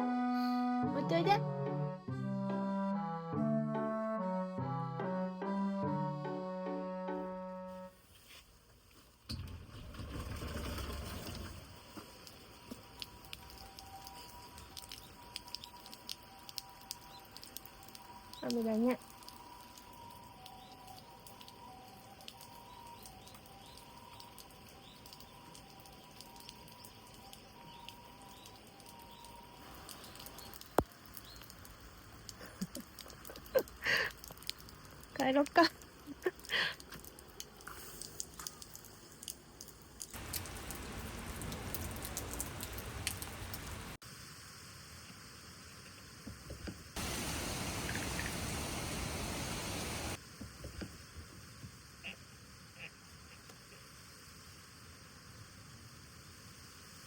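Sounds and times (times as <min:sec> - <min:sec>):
light rain pattering: 0:08.0 - 0:50.5
drips ticking: 0:12.2 - 0:44.0, 0:47.0 - 0:50.2
loud rushing hiss: 0:47.0 - 0:50.2.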